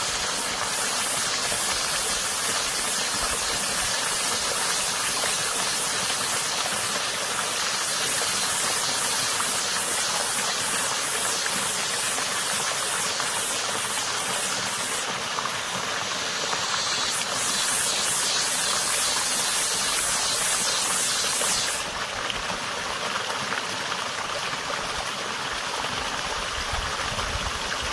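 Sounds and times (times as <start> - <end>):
cicada buzzing: 0.0 - 15.2, 15.8 - 21.9
creek water rushing: 0.0 - 27.9.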